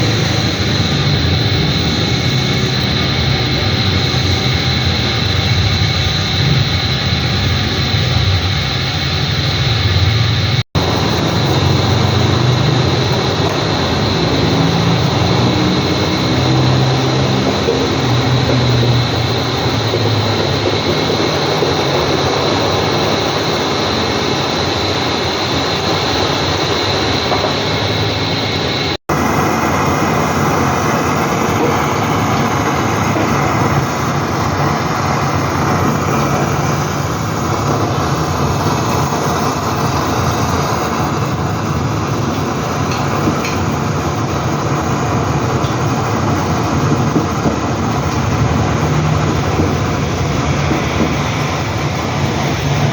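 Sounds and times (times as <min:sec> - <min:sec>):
washing machines rumbling: 0:00.0 - 0:52.9.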